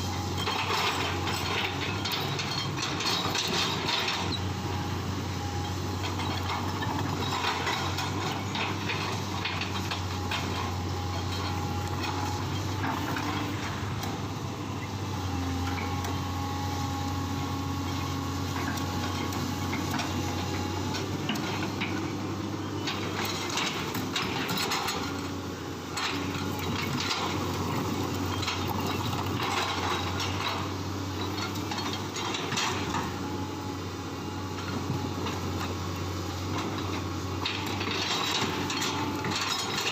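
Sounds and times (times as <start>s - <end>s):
excavator diesel engine running: 0.0s - 39.9s
metallic clanks and knocks: 36.5s - 39.9s.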